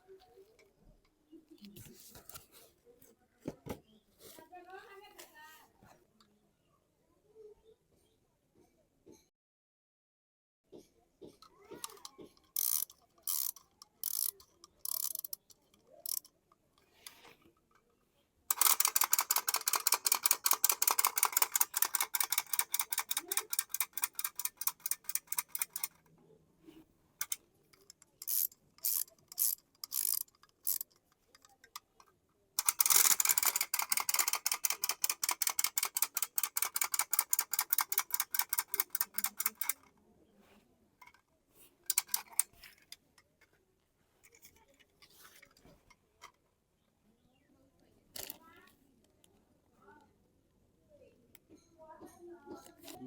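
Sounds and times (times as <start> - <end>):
fast mechanical clicking: 11.8 - 16.3, 18.5 - 26.0, 27.2 - 31.8, 32.6 - 39.9, 41.9 - 42.6.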